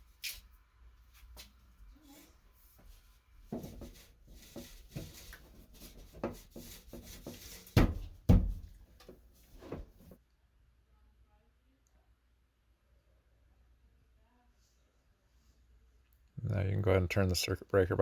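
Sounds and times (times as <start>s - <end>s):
heavy thumps: 7.7s - 8.8s.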